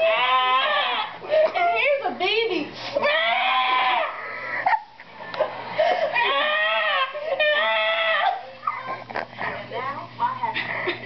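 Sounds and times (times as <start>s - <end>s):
person wailing: 6.2s - 8.4s.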